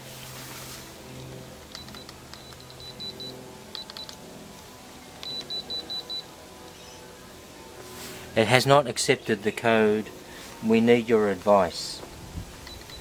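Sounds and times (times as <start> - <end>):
alarm keypad beeps: 1.7 - 4.1, 5.2 - 6.3, 12.6 - 13.0
faint keypad clicks: 3.7 - 4.2.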